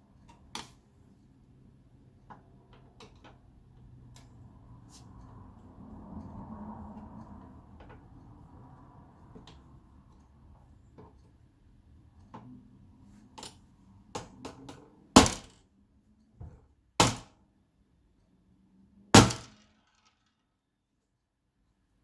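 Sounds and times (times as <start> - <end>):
loud sharp cracks: 19.2 - 19.6.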